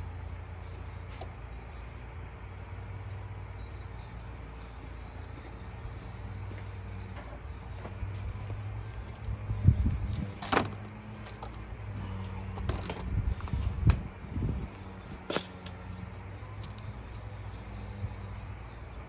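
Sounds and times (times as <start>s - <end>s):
steady low hum: 0.0s - 19.0s
tools clinking and knocking: 15.3s - 15.8s.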